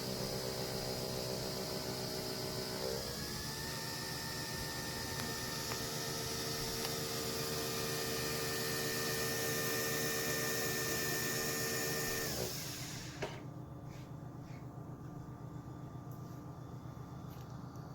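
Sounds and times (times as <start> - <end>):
small appliance motor whirring: 0.0 - 13.4.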